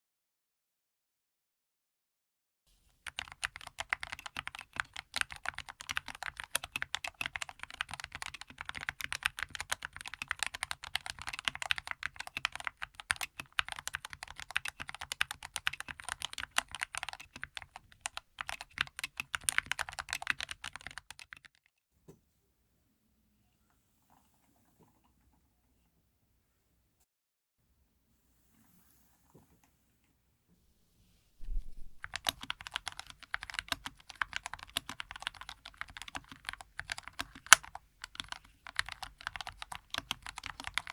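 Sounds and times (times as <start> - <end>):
mechanical keyboard typing: 3.0 - 21.6, 31.5 - 40.9.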